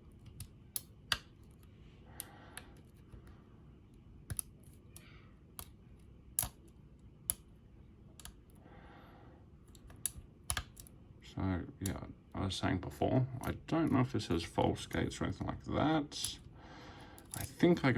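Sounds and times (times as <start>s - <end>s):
lock pick clicking: 4.3s - 5.0s, 6.4s - 6.7s, 9.7s - 10.9s.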